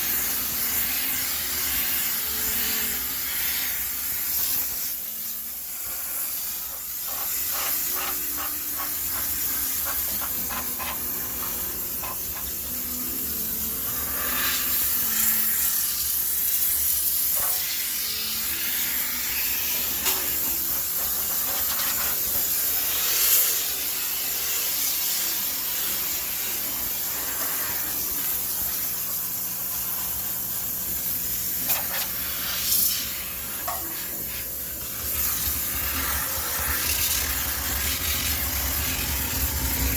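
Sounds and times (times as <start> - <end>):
steam cleaner hissing: 0.0 - 39.9.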